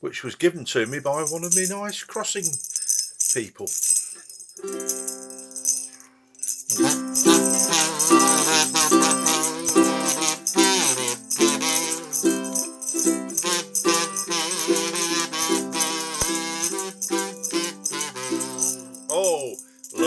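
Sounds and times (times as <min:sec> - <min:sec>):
shaken percussion: 0:00.8 - 0:20.0
instrumental backing music: 0:06.7 - 0:20.0.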